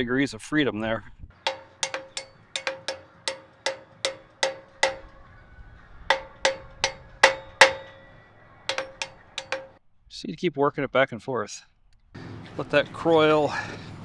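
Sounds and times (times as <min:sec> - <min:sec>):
hammer blows ringing on steel: 0:01.5 - 0:05.2, 0:06.1 - 0:09.7.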